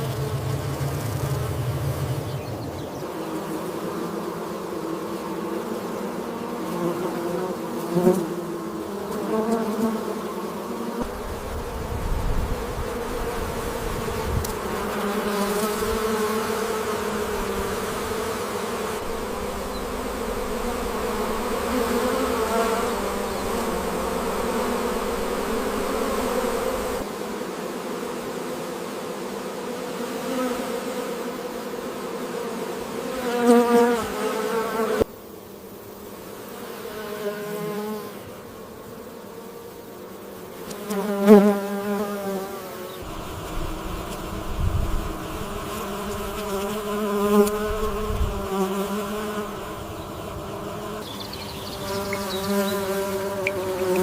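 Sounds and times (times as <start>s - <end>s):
continuous buzzing: 0.0s - 7.0s, 7.7s - 27.1s, 42.7s - 54.0s.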